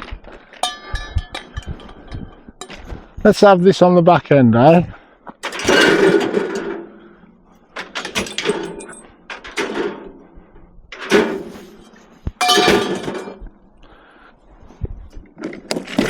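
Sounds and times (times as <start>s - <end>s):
scrap metal clattering: 0.6s - 3.1s, 5.4s - 13.5s.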